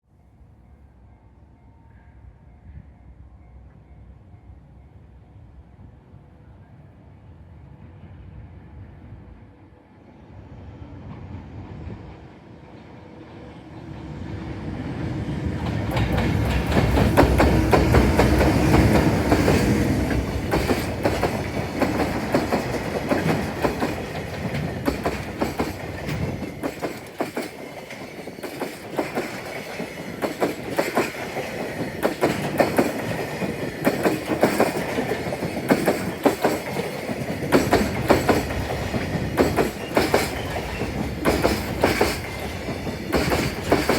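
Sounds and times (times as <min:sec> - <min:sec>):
wheels clacking over rail joints: 0:15.6 - 0:43.9.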